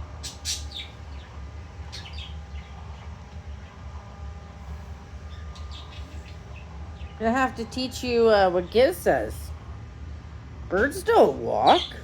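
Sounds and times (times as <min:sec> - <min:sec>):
steady low hum: 0:00.0 - 0:12.0
cockatiel chirping: 0:00.2 - 0:02.8, 0:05.3 - 0:06.7.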